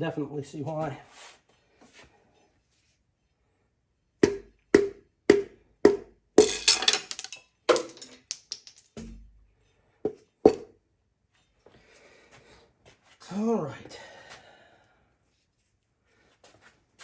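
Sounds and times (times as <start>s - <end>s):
hammer knocking on metal: 4.2s - 6.1s, 10.1s - 10.7s
rattling metal clatter: 6.4s - 9.2s.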